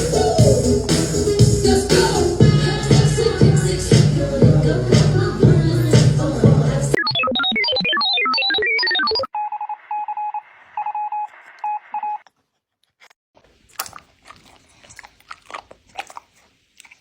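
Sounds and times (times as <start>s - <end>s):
short electronic beeps: 7.0s - 12.2s
dog crunching and chewing: 13.4s - 17.0s.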